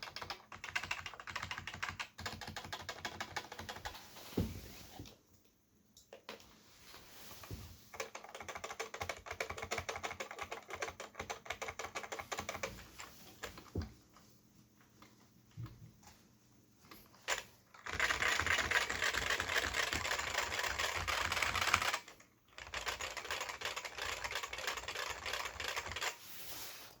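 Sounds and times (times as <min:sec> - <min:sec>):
keyboard typing: 0:00.0 - 0:04.0, 0:07.9 - 0:13.8, 0:17.3 - 0:26.2.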